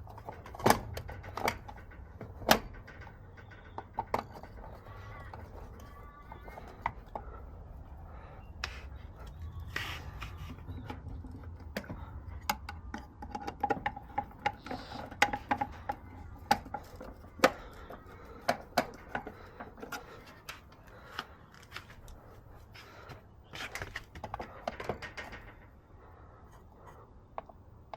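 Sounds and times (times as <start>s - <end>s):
clicks and taps on metal parts: 0.0s - 7.5s, 8.6s - 22.2s
low steady hum: 0.0s - 27.9s.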